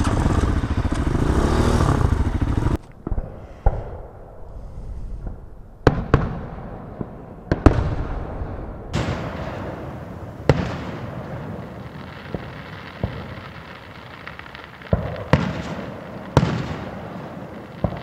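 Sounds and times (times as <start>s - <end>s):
dirt bike engine running: 0.0s - 2.8s
fireworks booming: 0.0s - 18.0s.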